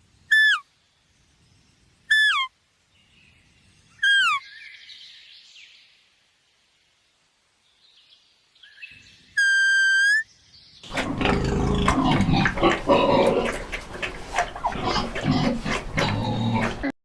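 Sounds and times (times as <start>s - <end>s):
high whistle-like animal call: 4.0s - 4.4s, 9.4s - 10.3s
farm animals calling together: 10.9s - 16.9s.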